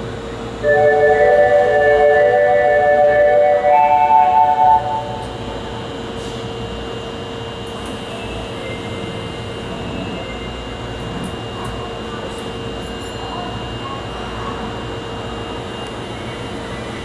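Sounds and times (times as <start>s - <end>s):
subway platform hum: 0.0s - 17.0s
platform departure melody: 0.6s - 6.0s.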